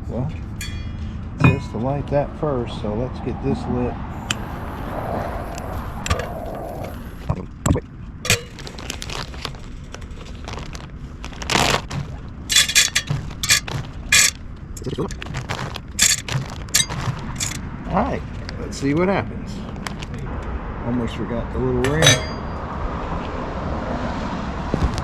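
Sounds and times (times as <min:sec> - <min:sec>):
fire starter striking and scraping: 0:11.8 - 0:14.4, 0:15.0 - 0:17.6, 0:21.9 - 0:22.6.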